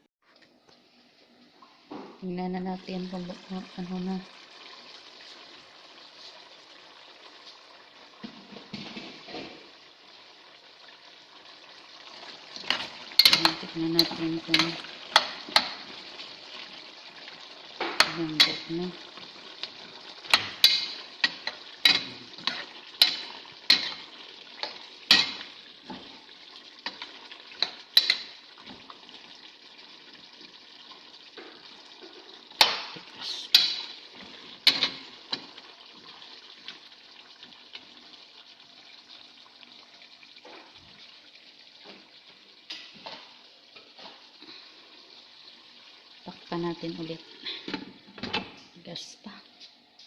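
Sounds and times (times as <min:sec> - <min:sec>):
curry bubbling: 0:02.8 - 0:48.8
spoon clinking against pot: 0:12.7 - 0:15.8.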